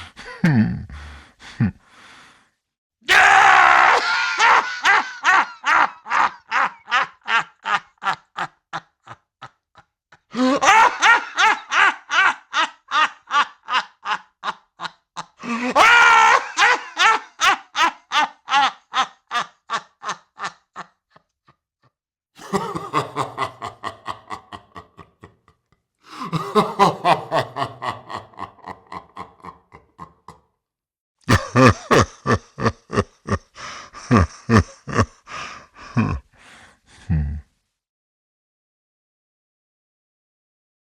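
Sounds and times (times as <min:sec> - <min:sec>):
creepy ghost laugh: 0:00.0 - 0:01.0, 0:03.1 - 0:21.3, 0:22.4 - 0:25.5, 0:26.1 - 0:30.4, 0:31.3 - 0:36.3, 0:37.0 - 0:37.5.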